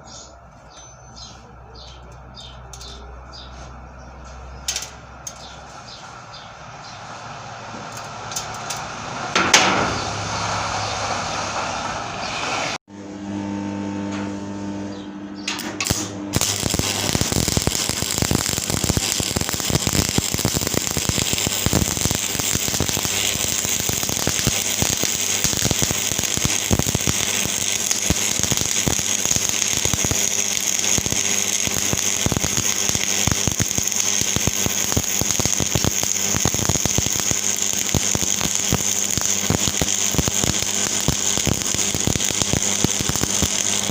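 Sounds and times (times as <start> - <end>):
welding arc crackling: 6.8 - 11.6, 15.6 - 43.9
welding rod strikes: 7.8 - 10.1, 15.5 - 43.9.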